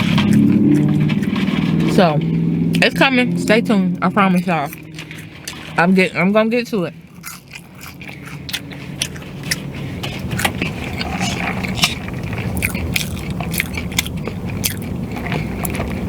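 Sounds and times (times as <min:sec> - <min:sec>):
person chewing food: 0:00.0 - 0:02.8, 0:04.2 - 0:05.8, 0:07.0 - 0:16.0
steady low rumble: 0:00.0 - 0:16.0.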